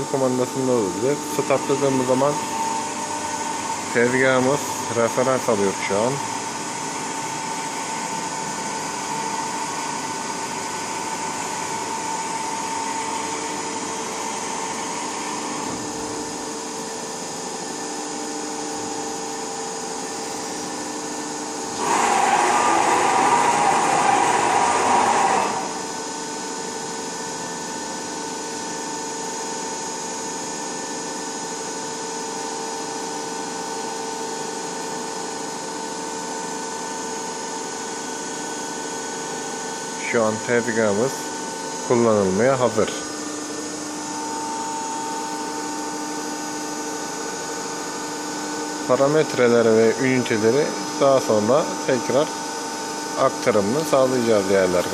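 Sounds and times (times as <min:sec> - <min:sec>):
louder machine whirr: 0:00.0 - 0:17.7, 0:21.4 - 0:27.1, 0:39.1 - 0:54.9.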